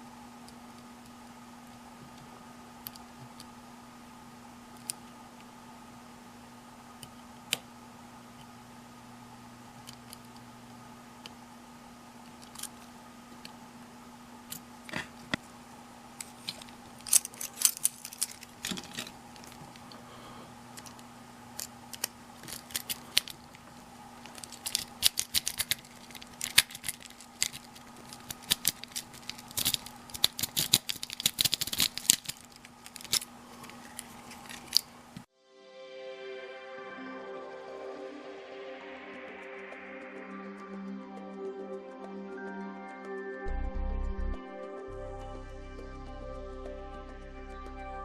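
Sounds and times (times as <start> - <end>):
faint steady hum: 0.0 - 48.0
lock picks clicking and scraping: 16.2 - 19.9, 21.6 - 23.4, 24.2 - 34.9.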